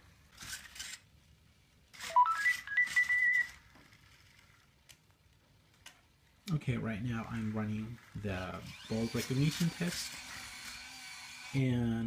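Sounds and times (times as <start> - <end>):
short high beeps: 2.0 - 3.6.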